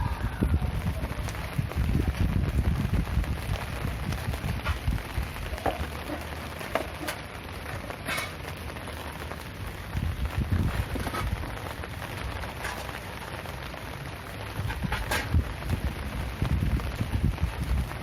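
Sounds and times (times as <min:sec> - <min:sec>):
loud single raindrops: 0:00.0 - 0:18.0
rain pattering: 0:00.0 - 0:18.0.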